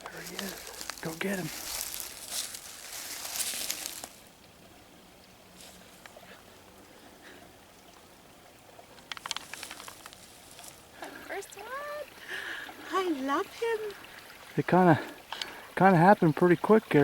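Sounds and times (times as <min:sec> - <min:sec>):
faint crackles: 0:00.0 - 0:04.3, 0:09.0 - 0:14.2
footsteps rustling through undergrowth: 0:00.0 - 0:04.3, 0:05.6 - 0:06.0, 0:09.8 - 0:10.8.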